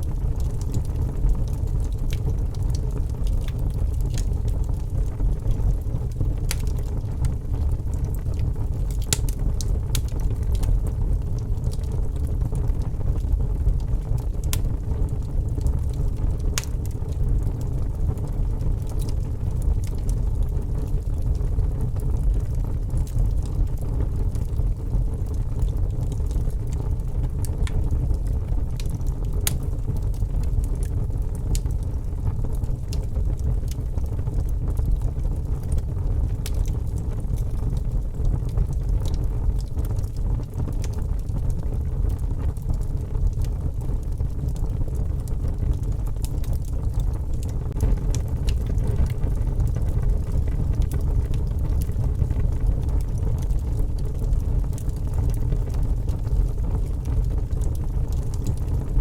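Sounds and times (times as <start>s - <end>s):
steady low rumble: 0.0s - 59.0s
wood fire crackling: 0.0s - 59.0s
sharp pops of fire: 8.9s - 10.7s.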